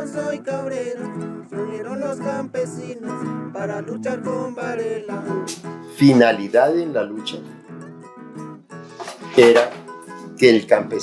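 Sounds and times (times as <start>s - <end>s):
acoustic guitar music: 0.0s - 11.0s.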